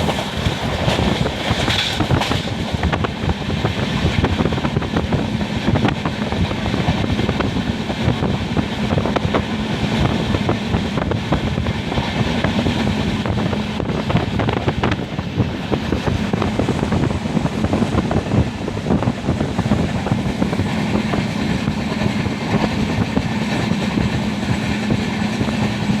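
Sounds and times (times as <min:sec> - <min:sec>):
train rumbling at speed: 0:00.0 - 0:26.0
wheels clattering over rails: 0:00.0 - 0:26.0.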